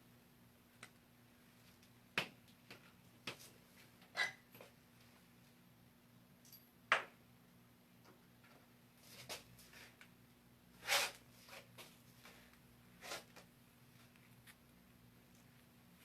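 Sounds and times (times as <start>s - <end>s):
faint electrical hum: 0.0s - 16.0s
short rustling scrapes: 10.8s - 13.4s.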